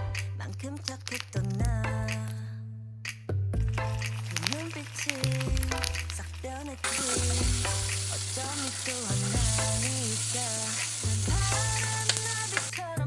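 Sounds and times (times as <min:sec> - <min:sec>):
background music with bass line: 0:00.0 - 0:13.0
frying sizzle: 0:00.8 - 0:01.5, 0:03.6 - 0:13.0.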